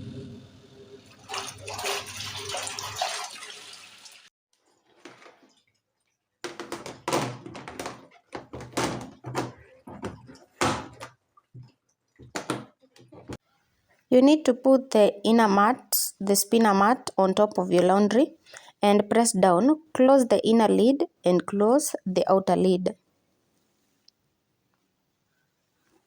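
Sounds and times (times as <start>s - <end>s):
low motor hum: 0.0s - 1.1s
water churning in washing machine: 1.0s - 4.3s
loud knocks and rustles: 6.4s - 13.4s.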